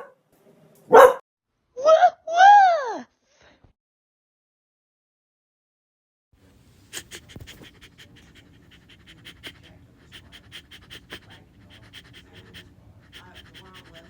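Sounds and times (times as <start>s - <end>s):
dog panting: 6.7s - 14.0s.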